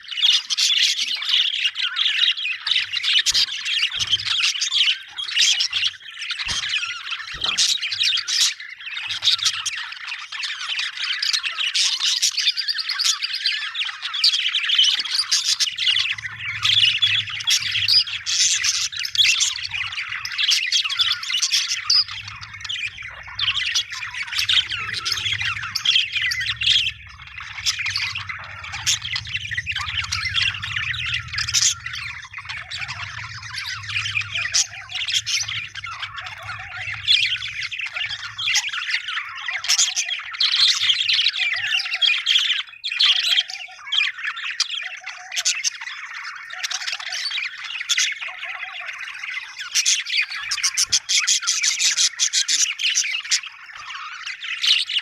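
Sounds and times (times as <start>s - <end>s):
budgerigars chirping and squawking: 0.0s - 55.0s
faint low hum: 15.2s - 39.3s.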